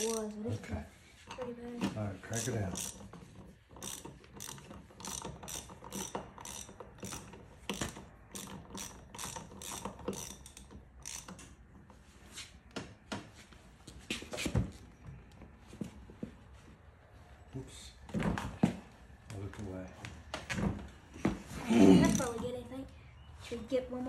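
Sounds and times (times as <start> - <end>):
ratchet clicking: 0.0 - 0.4, 2.3 - 11.6.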